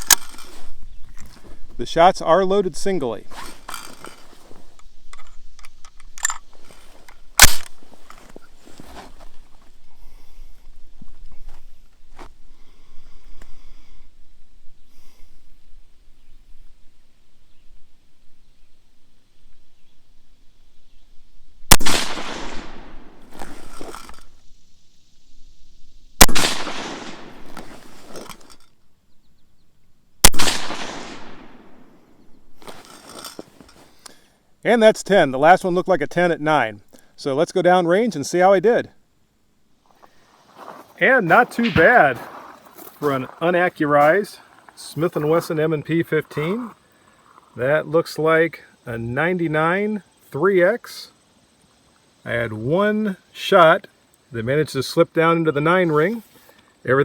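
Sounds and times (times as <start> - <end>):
rifle being handled rattling: 0.0 - 1.6, 3.3 - 9.1, 23.3 - 24.3, 27.4 - 28.8, 32.6 - 33.9
rifle shot: 7.4 - 7.8, 21.7 - 23.6, 26.2 - 27.9, 30.2 - 32.0, 41.6 - 42.2.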